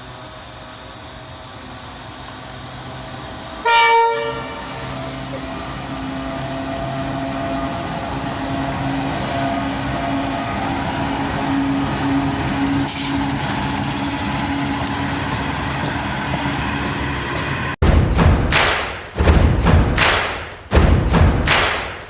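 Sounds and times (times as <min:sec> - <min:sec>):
train rumbling: 0:00.0 - 0:22.0.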